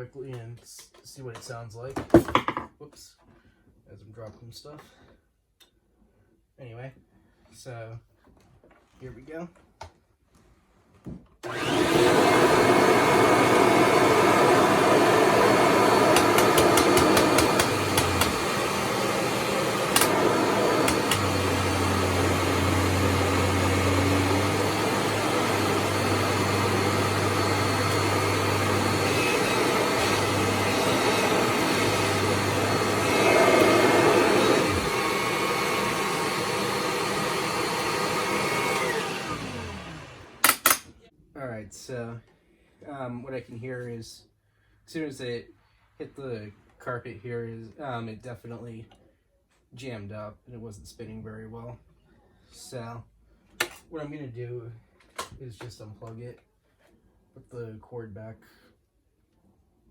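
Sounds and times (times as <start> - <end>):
upright vacuum cleaner running: 11.4 - 40.8.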